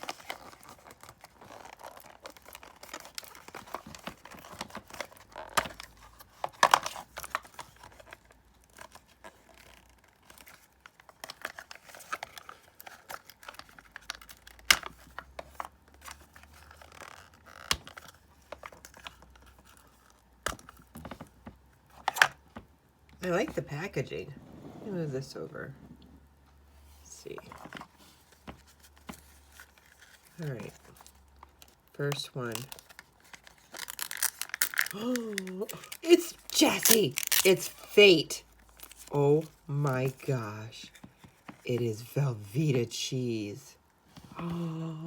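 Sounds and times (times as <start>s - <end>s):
packaging wrappers crinkling: 0.0s - 20.8s, 27.3s - 40.2s.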